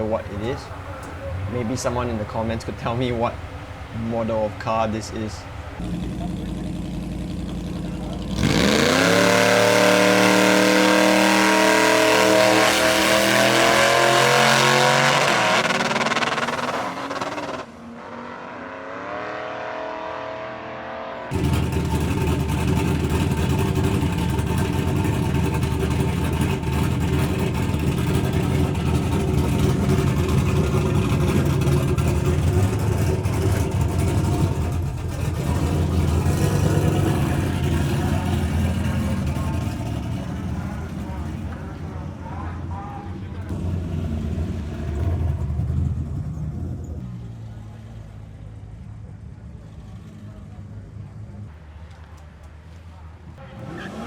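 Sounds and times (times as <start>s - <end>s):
rough engine running steadily: 0.0s - 13.1s, 21.3s - 51.6s
drag car engine accelerating: 0.0s - 52.2s, 53.4s - 54.0s.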